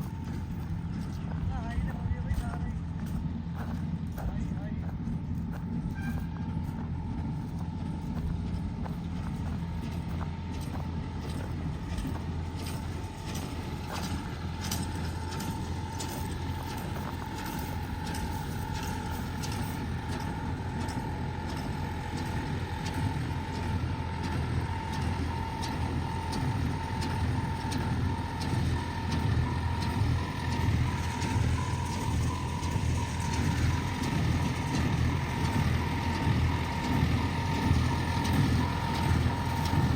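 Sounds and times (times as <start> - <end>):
tractor engine drone: 0.0 - 39.9.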